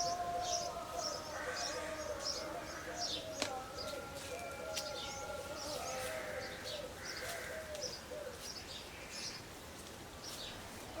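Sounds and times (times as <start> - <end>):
low wavering bird call: 0.0 - 7.0
birds chirping: 0.0 - 11.0.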